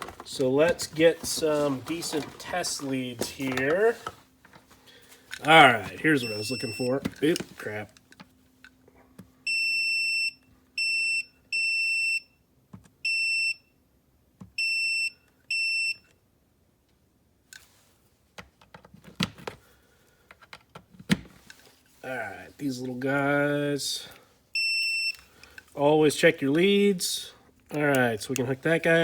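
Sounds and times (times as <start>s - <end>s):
multimeter continuity beeps: 6.2s - 7.4s, 24.6s - 25.3s.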